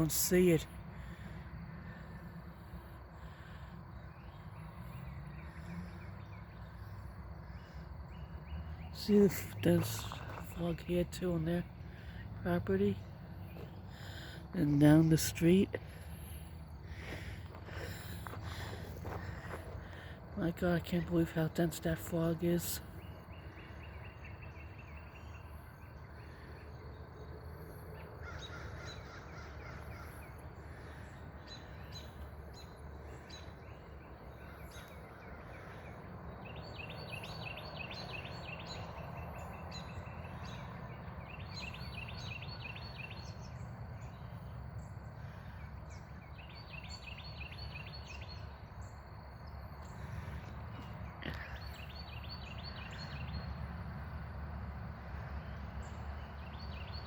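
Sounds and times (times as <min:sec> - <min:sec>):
steady low rumble: 0:00.0 - 0:36.8
birds chirping: 0:00.0 - 0:54.0, 0:55.2 - 0:57.0.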